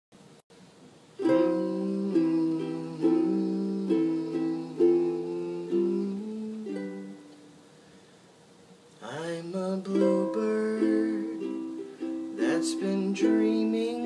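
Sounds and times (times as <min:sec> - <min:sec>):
plucked string chords: 0:01.2 - 0:07.4.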